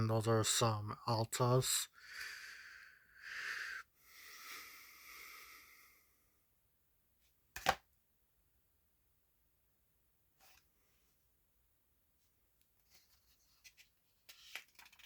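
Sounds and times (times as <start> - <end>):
person breathing close to microphone: 1.9 - 6.2.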